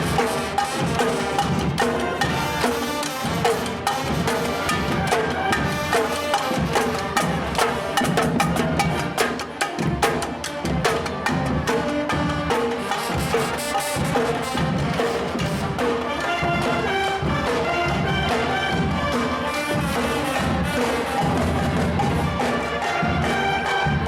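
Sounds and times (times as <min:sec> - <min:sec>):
music with busy percussion: 0:00.0 - 0:24.0.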